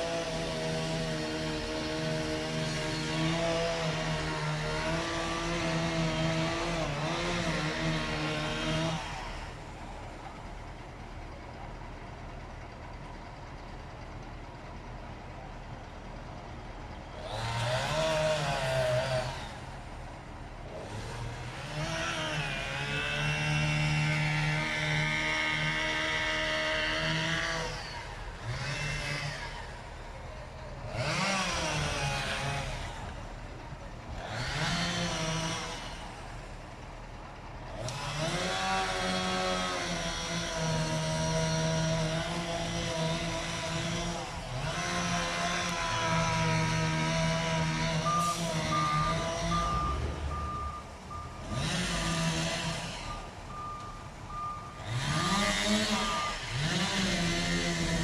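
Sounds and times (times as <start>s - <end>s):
chainsaw revving: 0.0s - 9.6s, 17.1s - 19.8s, 20.7s - 29.8s, 30.8s - 33.2s, 34.2s - 36.3s, 37.7s - 53.8s, 54.8s - 58.0s.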